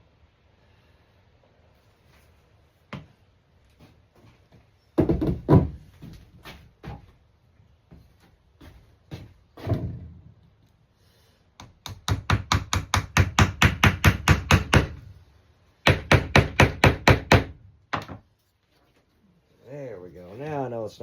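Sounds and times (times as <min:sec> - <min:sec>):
hammer knocking on wood: 0:05.0 - 0:05.8, 0:15.9 - 0:18.2.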